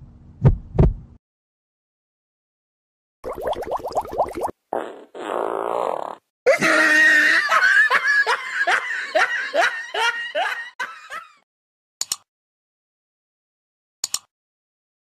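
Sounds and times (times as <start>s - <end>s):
fart sound: 4.3s - 6.3s
hearty laughter: 6.5s - 11.4s.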